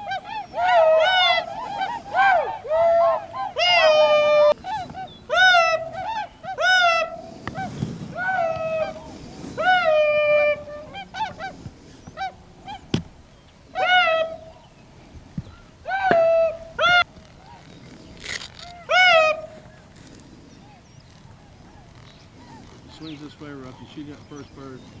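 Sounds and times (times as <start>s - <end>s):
geese honking: 0.0s - 19.8s
geese clucking: 0.0s - 25.0s.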